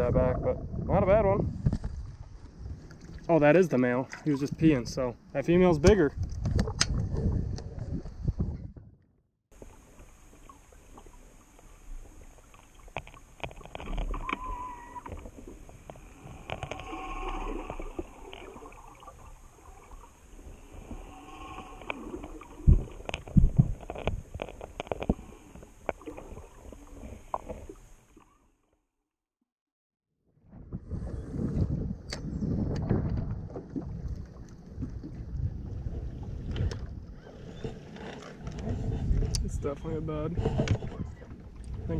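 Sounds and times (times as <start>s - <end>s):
underwater clicks and knocks: 5.8s - 7.8s, 12.5s - 18.6s, 22.7s - 25.2s, 40.4s - 41.8s
muffled underwater gurgling: 13.5s - 27.8s.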